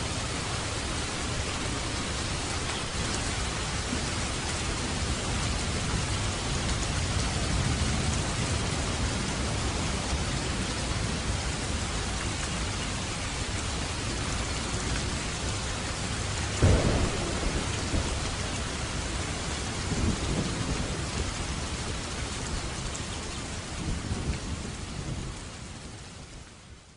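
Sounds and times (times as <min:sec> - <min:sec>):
steady rainfall: 0:00.0 - 0:26.9
sharp thunderclap: 0:16.6 - 0:21.2
thunder rumbling: 0:16.6 - 0:22.0.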